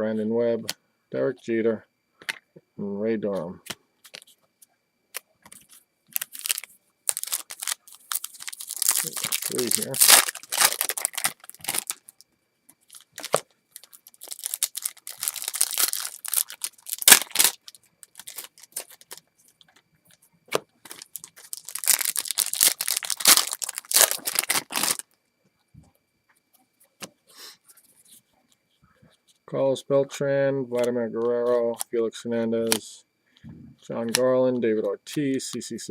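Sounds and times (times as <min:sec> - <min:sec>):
foil wrapper tearing and crinkling: 0:06.1 - 0:12.2, 0:12.9 - 0:19.2, 0:20.8 - 0:25.0.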